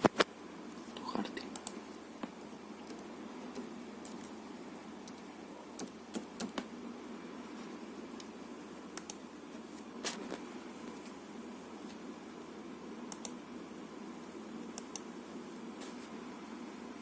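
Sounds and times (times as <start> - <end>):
steady background hum: 0.0 - 17.0
keyboard and mouse clicks: 1.4 - 4.3, 5.0 - 6.7, 9.0 - 9.2, 13.1 - 13.4, 14.6 - 15.1.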